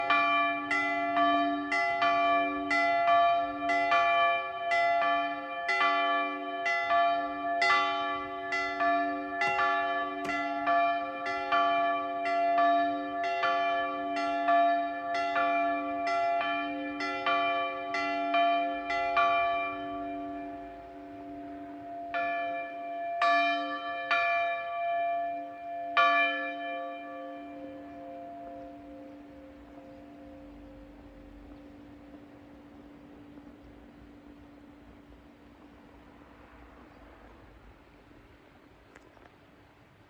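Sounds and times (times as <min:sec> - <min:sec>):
church bells ringing: 0:00.0 - 0:35.9.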